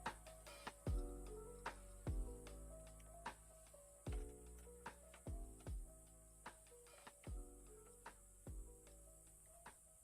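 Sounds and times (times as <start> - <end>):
soft deep drum beat: 0.8 - 1.2, 2.1 - 2.5, 4.1 - 4.4, 5.3 - 6.0, 7.3 - 7.6, 8.5 - 8.8.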